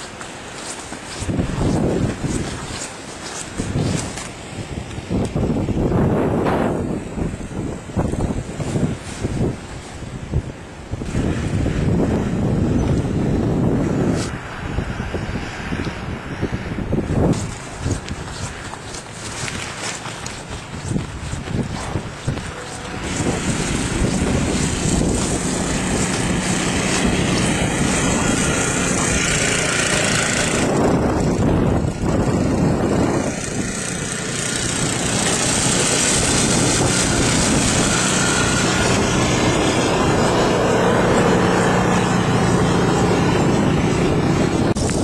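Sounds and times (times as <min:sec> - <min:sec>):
wind gusting on microphone: 0:00.0 - 0:45.0
engine running: 0:17.1 - 0:45.0.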